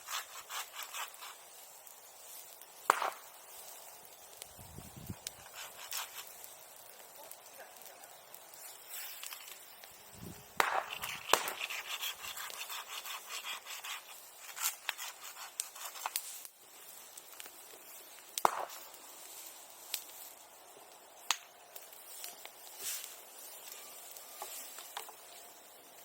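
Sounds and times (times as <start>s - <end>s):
bonfire crackling: 0.0s - 26.0s
sharp pops from fire: 0.0s - 26.0s.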